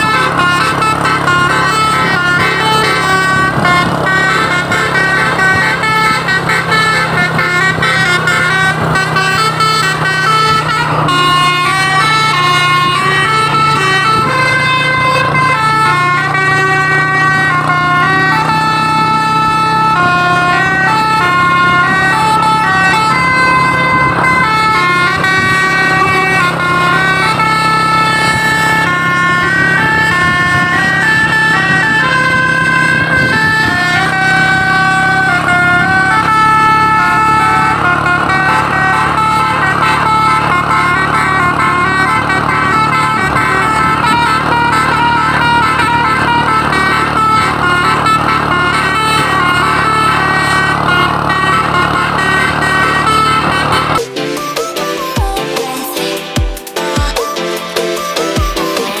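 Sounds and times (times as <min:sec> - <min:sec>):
musical bus horn melody: 0:00.0 - 0:59.0.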